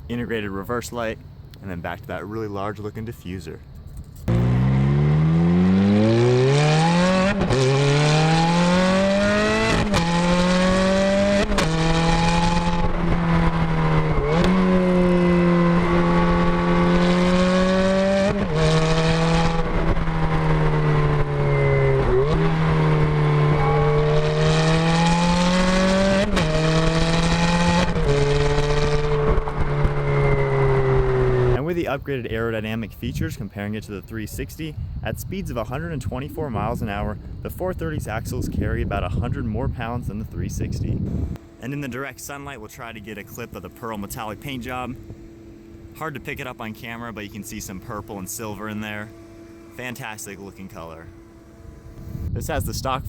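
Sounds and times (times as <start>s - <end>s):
car engine accelerating hard: 4.3s - 31.6s, 38.5s - 53.0s.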